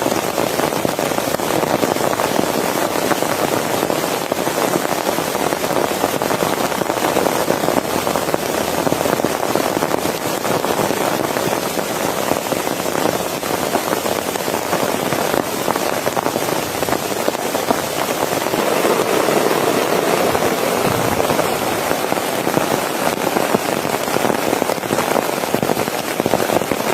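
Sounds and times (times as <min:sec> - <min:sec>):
dense rain pattering: 0:00.0 - 0:26.9.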